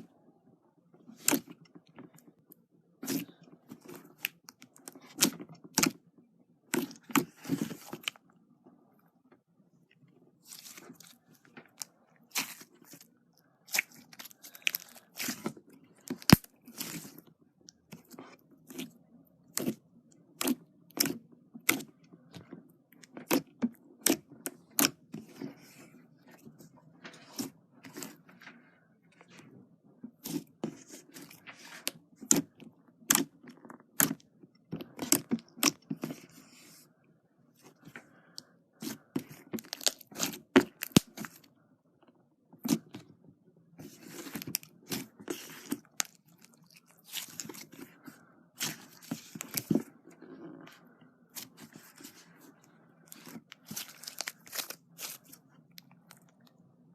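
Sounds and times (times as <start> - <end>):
slime popping and crackling: 39.2 - 41.4.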